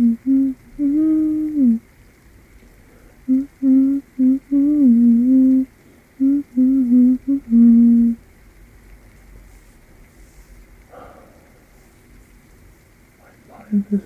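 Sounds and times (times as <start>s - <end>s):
person humming a slow tune: 0.0s - 1.8s, 3.2s - 8.2s, 13.7s - 14.0s.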